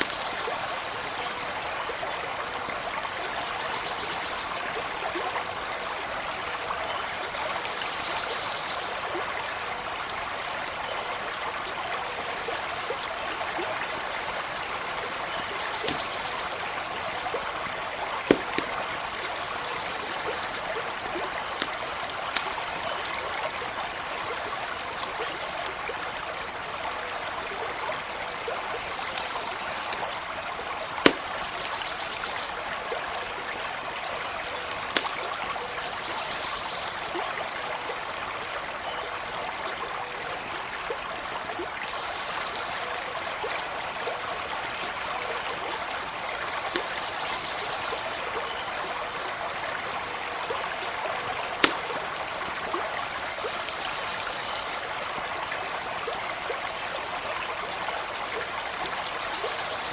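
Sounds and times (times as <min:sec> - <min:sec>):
campfire crackling pops: 0:00.0 - 0:04.3, 0:10.6 - 0:27.2, 0:27.9 - 0:35.8, 0:40.6 - 0:41.0, 0:41.6 - 0:43.8, 0:44.5 - 0:48.1, 0:51.2 - 0:53.7
stream trickling: 0:00.0 - 0:59.9.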